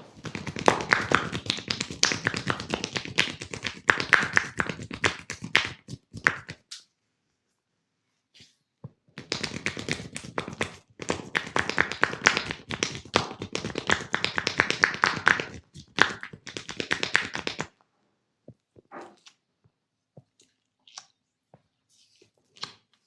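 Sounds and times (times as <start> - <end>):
hands slapping on skin: 0.0 - 6.8, 9.2 - 17.7.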